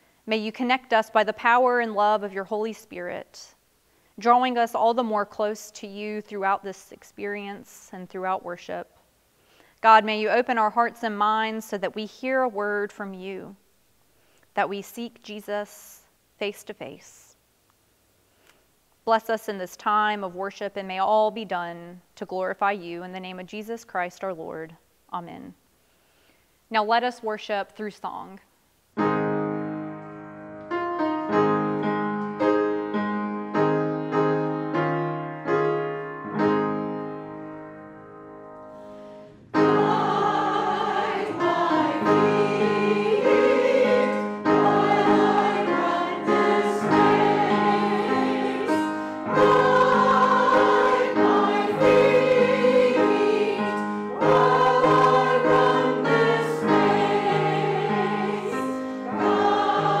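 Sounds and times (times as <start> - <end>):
piano chords: 29.0 - 60.0
choir singing: 39.5 - 60.0.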